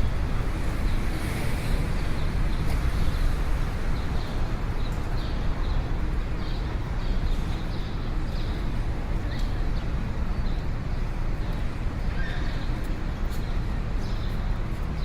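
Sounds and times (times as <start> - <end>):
traffic rumble: 0.0 - 15.0.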